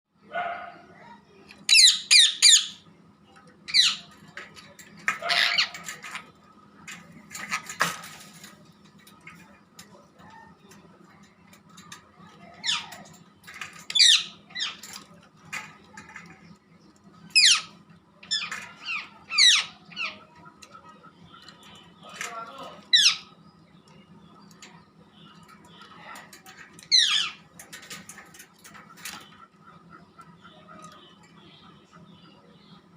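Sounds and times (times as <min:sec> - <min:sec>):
steady low hum: 0:00.1 - 0:32.9
parrot squawking: 0:01.7 - 0:02.8, 0:05.2 - 0:06.0, 0:13.9 - 0:14.9, 0:17.3 - 0:20.2, 0:22.9 - 0:23.3.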